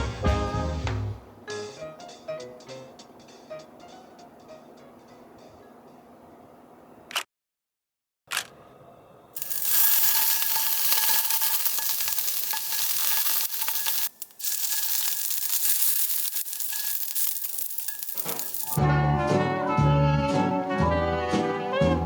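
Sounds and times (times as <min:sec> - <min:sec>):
steak sizzling in a frying pan: 0:09.4 - 0:18.8.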